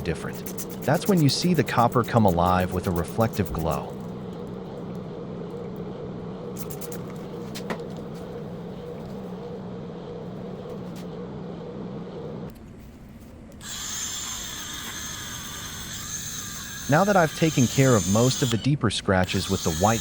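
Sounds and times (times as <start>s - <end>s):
high-pitched whine: 0.0s - 12.5s, 13.6s - 20.0s
power polishing tool running: 13.6s - 18.6s, 19.2s - 20.0s.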